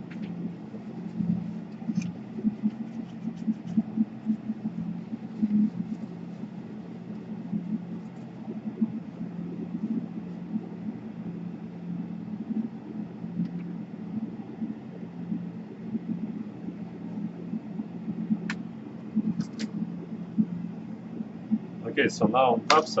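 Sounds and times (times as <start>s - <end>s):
steady low hum: 0.0s - 23.0s
faint light clicks: 13.4s - 13.8s.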